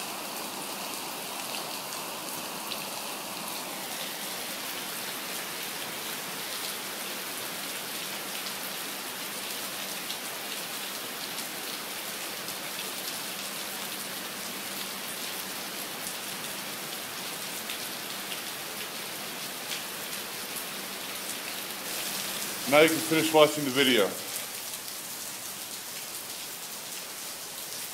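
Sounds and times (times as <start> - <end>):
steady rainfall hiss: 0.0 - 27.9.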